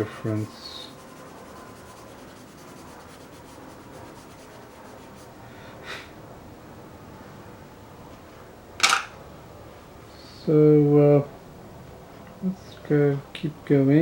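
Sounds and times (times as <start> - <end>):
pencil scratching on paper: 0.4 - 5.4.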